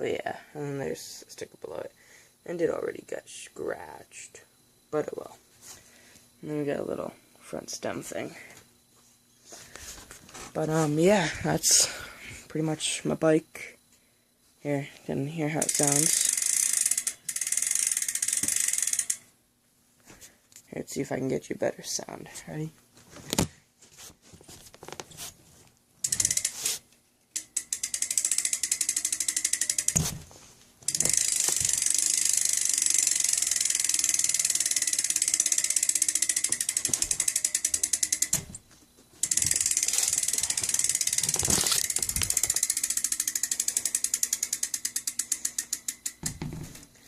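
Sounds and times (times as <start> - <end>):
bicycle hub ratchet clicking: 15.5 - 19.3, 26.0 - 30.2, 30.9 - 38.6, 39.2 - 46.9.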